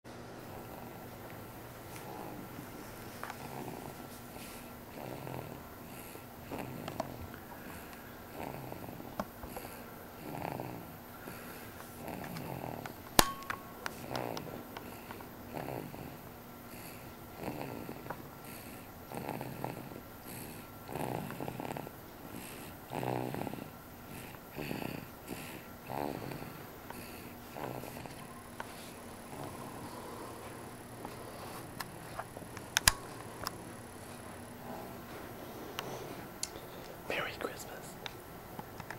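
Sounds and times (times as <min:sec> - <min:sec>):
person snoring: 0:01.9 - 0:13.0, 0:14.0 - 0:32.2, 0:34.6 - 0:37.8.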